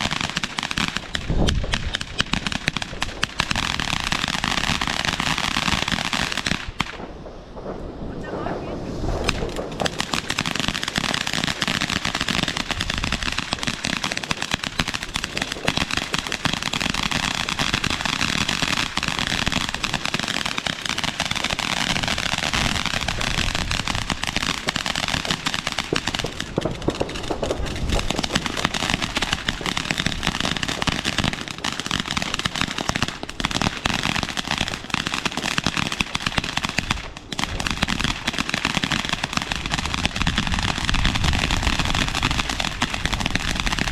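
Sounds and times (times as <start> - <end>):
fireworks bangs and crackles: 0.0 - 43.9.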